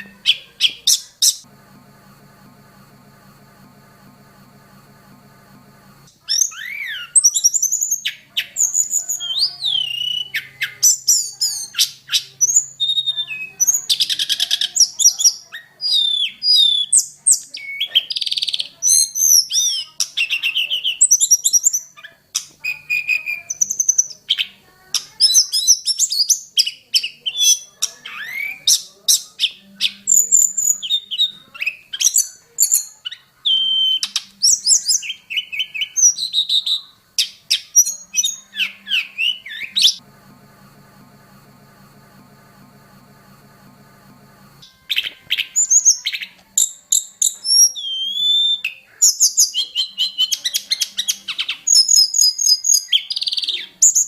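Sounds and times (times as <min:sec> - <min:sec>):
bird singing whistles and trills: 0:06.2 - 0:40.0, 0:44.6 - 0:54.0.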